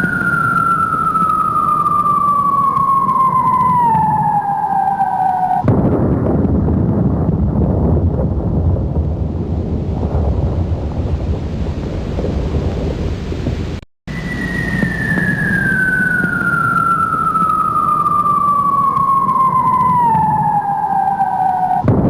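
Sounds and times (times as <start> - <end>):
falling bomb whistle: 0.0 - 5.8, 14.1 - 22.0
low rumbling noise: 0.0 - 22.0.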